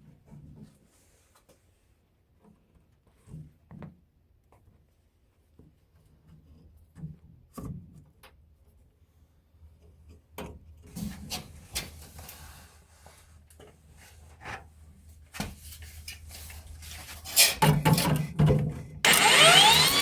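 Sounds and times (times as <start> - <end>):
clicks: 19.1 - 20.0.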